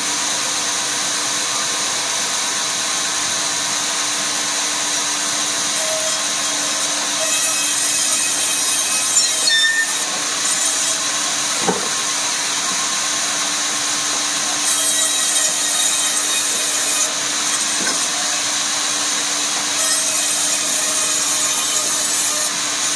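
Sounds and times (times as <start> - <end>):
power saw motor humming: 1.9 - 22.9
saw blade cutting wood: 5.3 - 12.8, 14.4 - 22.9.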